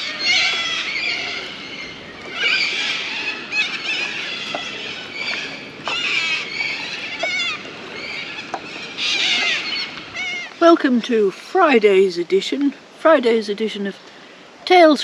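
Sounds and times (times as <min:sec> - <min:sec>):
flock of birds calling: 0:00.0 - 0:11.0.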